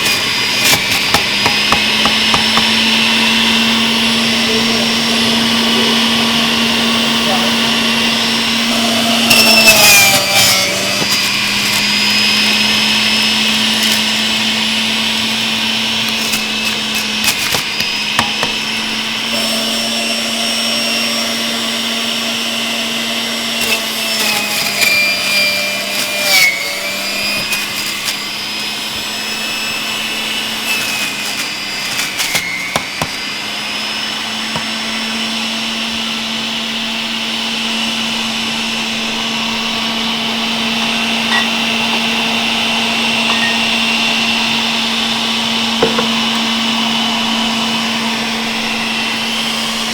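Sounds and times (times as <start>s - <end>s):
grinding crunch of celery: 0.0s - 4.2s, 8.6s - 35.3s
juicer motor humming: 0.0s - 49.9s.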